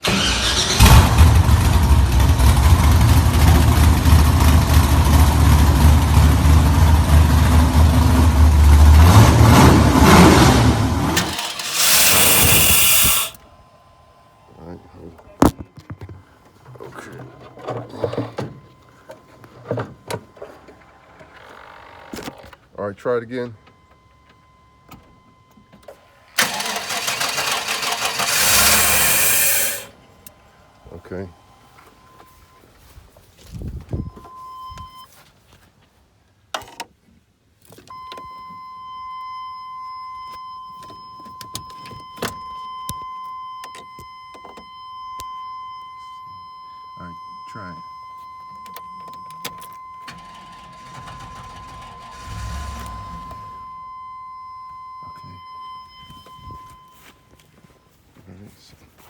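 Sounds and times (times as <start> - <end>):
starter cranking engine: 0.0 - 1.9, 11.0 - 13.4, 26.3 - 30.0, 50.0 - 53.7.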